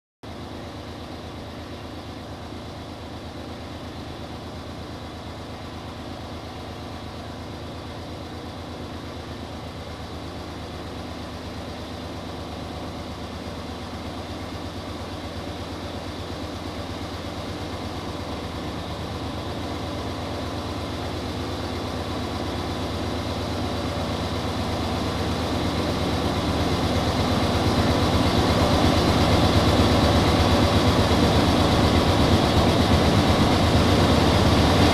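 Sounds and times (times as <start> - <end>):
diesel locomotive engine drone: 0.2 - 34.9.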